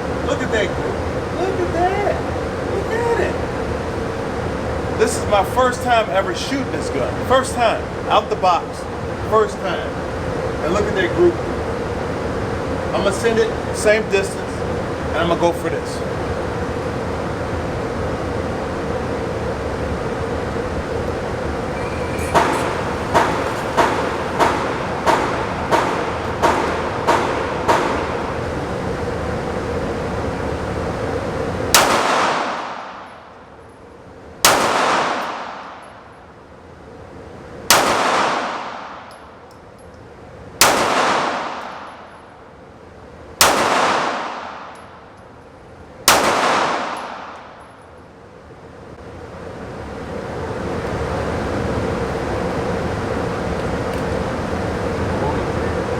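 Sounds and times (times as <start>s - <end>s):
ventilation hum: 0.0s - 55.9s
pistol shots echoing: 22.3s - 28.7s, 31.7s - 33.2s, 34.4s - 35.9s, 37.7s - 39.1s, 40.6s - 42.1s, 43.4s - 45.0s, 46.1s - 47.7s.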